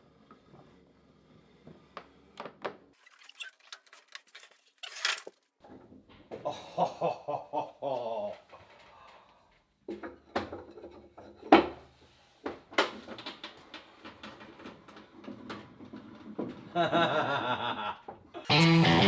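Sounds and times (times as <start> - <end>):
wooden and metal parts clattering: 3.0 - 6.4.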